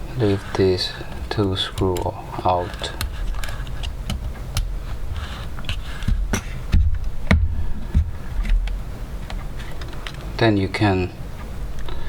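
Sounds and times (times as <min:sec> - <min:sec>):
low thumps: 0:05.7 - 0:08.8.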